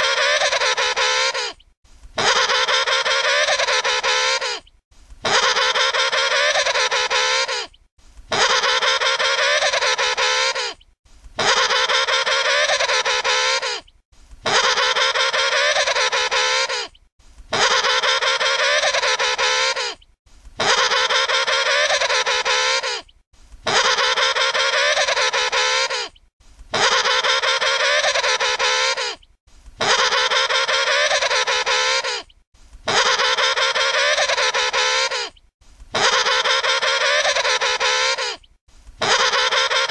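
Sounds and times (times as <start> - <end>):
penguin trumpeting call: 0.0 - 1.6, 2.2 - 4.6, 5.2 - 7.7, 8.3 - 10.8, 11.4 - 13.8, 14.4 - 16.9, 17.5 - 20.0, 20.6 - 23.0, 23.7 - 26.1, 26.7 - 29.2, 29.8 - 32.2, 32.9 - 35.3, 35.9 - 38.4, 39.0 - 39.9.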